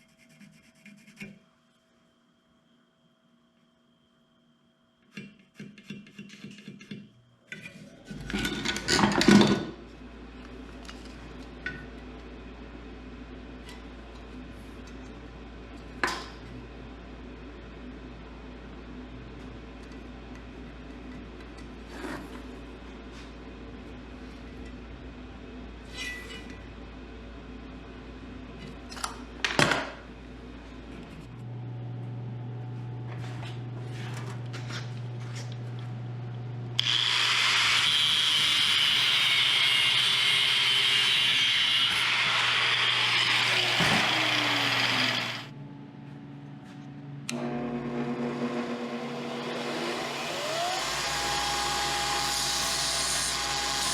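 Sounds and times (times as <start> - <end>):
steady low hum: 9.7 - 36.8, 45.3 - 50.1
power saw running: 36.8 - 45.5, 47.3 - 53.9.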